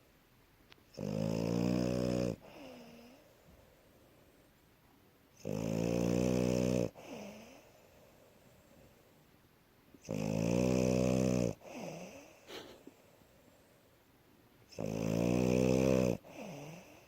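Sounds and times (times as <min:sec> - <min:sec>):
dog snoring: 0:00.9 - 0:03.2, 0:05.4 - 0:07.7, 0:10.0 - 0:12.9, 0:14.7 - 0:17.0.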